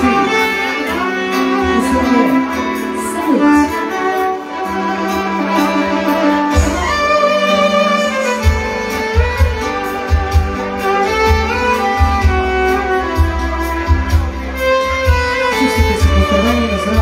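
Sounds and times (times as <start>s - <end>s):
violin melody: 0.0s - 17.0s
bass and drum beat: 5.6s - 17.0s.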